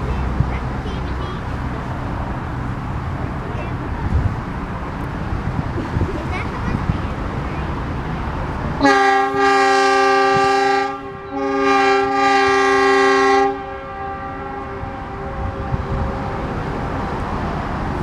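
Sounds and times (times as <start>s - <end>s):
multi-tone air horn blasts: 8.8s - 16.6s.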